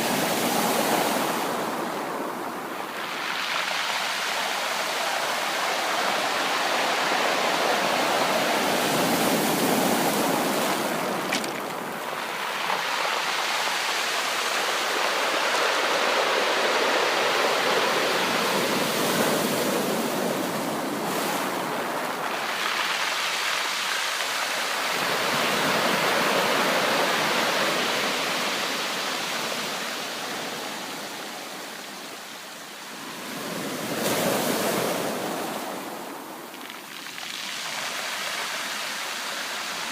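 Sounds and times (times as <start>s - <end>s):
sea waves breaking ashore: 0.0s - 31.9s.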